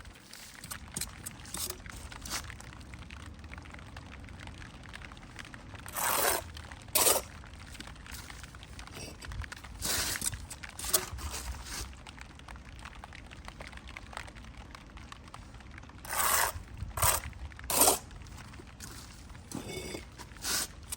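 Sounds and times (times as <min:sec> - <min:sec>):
gritty scrapes on brick: 0:00.0 - 0:02.5, 0:05.9 - 0:11.9, 0:16.0 - 0:20.9.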